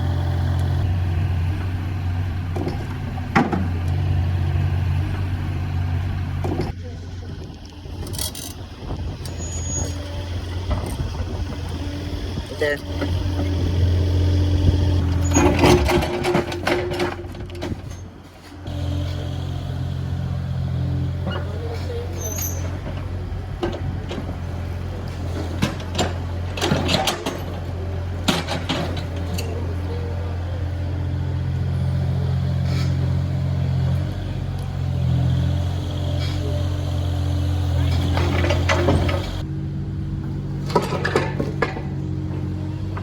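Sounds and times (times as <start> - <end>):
diesel engine running: 0.0 - 43.0
clattering crunching knocks: 1.5 - 4.2, 22.6 - 29.4, 37.8 - 39.5, 40.2 - 43.0.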